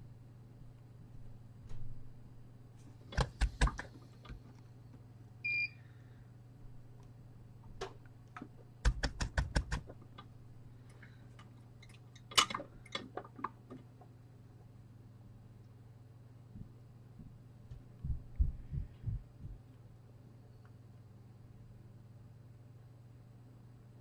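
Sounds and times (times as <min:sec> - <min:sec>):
low hum of equipment: 0:00.0 - 0:24.0
small sharp clicks and taps: 0:07.7 - 0:10.3.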